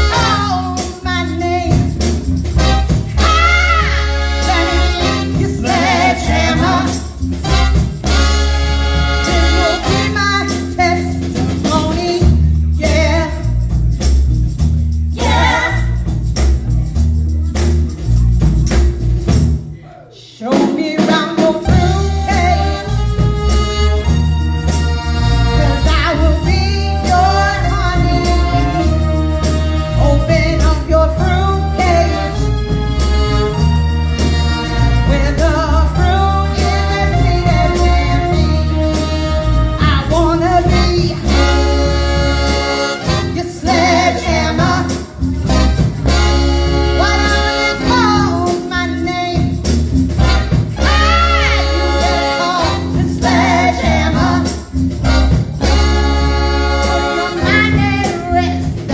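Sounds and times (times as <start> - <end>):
electric bass: 0.0 - 19.8, 21.6 - 58.9
drums: 0.0 - 58.9
lead vocal singing: 2.7 - 7.7, 15.2 - 16.0, 20.2 - 23.7, 34.9 - 45.7, 46.8 - 49.6, 50.3 - 58.9.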